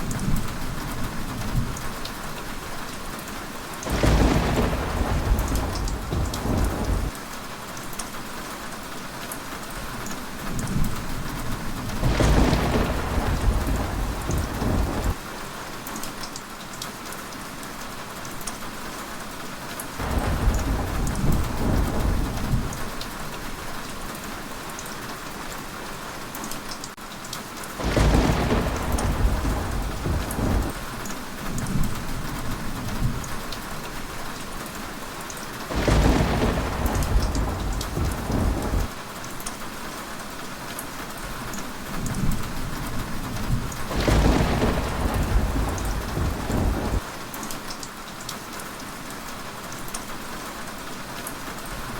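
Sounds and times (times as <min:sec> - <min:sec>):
heavy rain falling: 0:00.0 - 0:51.9
rolling thunder rumbles: 0:03.9 - 0:07.2, 0:10.6 - 0:15.2, 0:20.0 - 0:23.7, 0:27.8 - 0:33.9, 0:35.7 - 0:39.0, 0:41.9 - 0:47.1.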